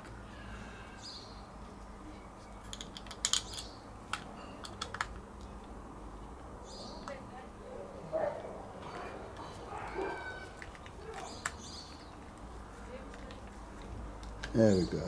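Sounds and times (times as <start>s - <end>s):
screws and housing clicking: 2.6s - 5.2s.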